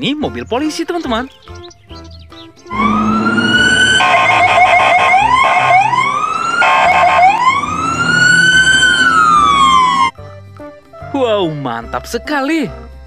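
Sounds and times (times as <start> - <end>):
electronic police siren: 2.7 - 10.1.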